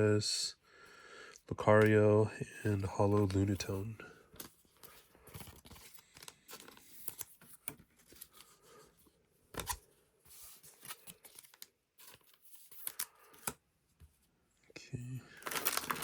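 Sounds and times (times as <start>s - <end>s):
trading cards being handled: 2.6s - 8.6s, 9.5s - 13.6s
foil wrapper crinkling: 15.4s - 16.0s.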